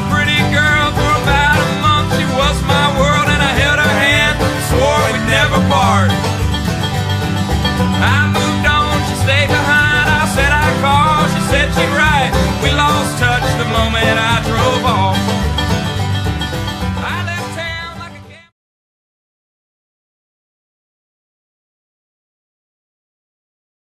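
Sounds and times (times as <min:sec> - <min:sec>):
bluegrass music with banjo and guitar: 0:00.0 - 0:18.5.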